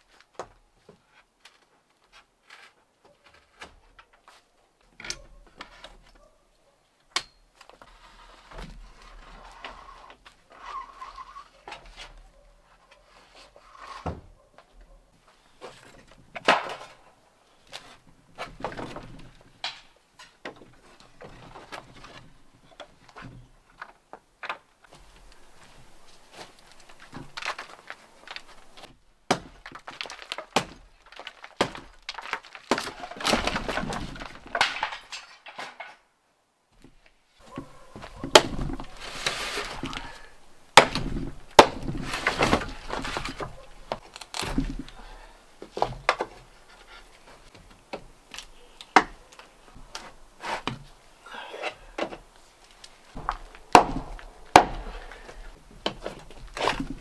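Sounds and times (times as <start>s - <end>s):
scraping and rubbing: 37.4s - 45.0s
hand tool knocks and cracking: 53.2s - 57.0s.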